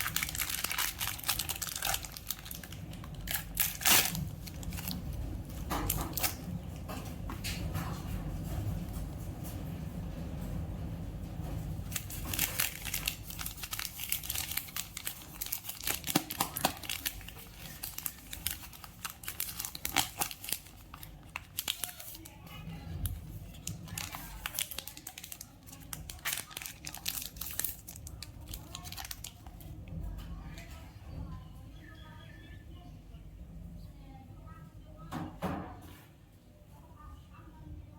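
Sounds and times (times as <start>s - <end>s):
plastic wrappers crinkling: 0.0s - 6.8s, 11.9s - 30.0s.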